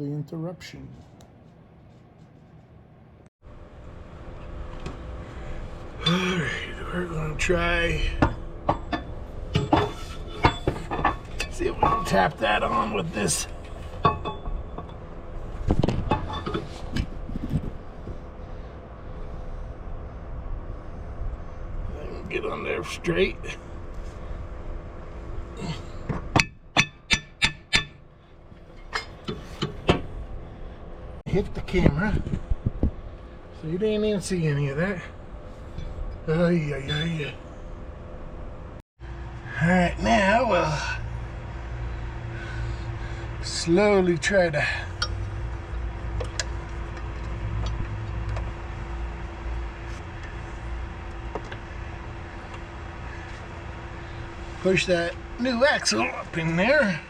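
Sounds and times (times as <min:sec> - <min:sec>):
low machine rumble and hum: 0:00.0 - 0:57.0
hammer striking metal: 0:26.4 - 0:28.0.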